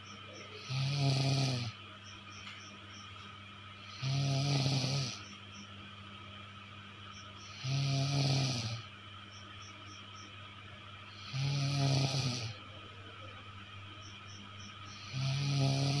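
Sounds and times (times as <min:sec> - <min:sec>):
steady low hum: 0:00.0 - 0:16.0
person snoring: 0:00.4 - 0:01.8, 0:03.8 - 0:05.3, 0:07.4 - 0:08.9, 0:11.1 - 0:12.6, 0:15.0 - 0:16.0.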